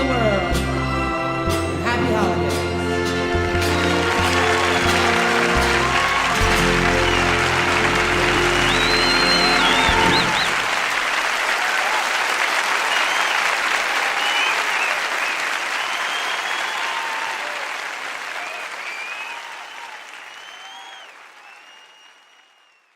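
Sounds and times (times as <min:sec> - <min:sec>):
live music: 0:00.0 - 0:11.4
audience applauding: 0:03.0 - 0:22.9.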